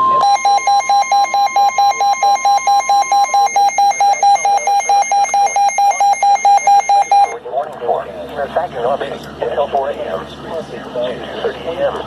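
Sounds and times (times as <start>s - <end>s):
steady warning tone: 0.0s - 7.4s
weather alert alarm beeping: 0.0s - 7.4s.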